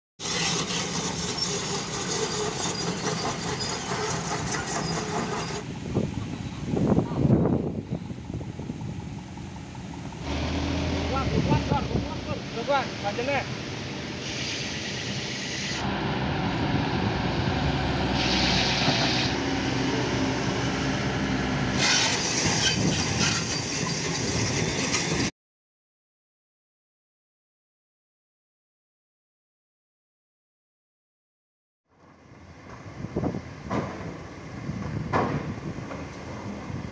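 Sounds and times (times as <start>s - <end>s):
diesel engine running under load: 0.2s - 14.3s, 15.8s - 22.6s
hissing bursts: 12.4s - 15.9s, 18.0s - 19.4s.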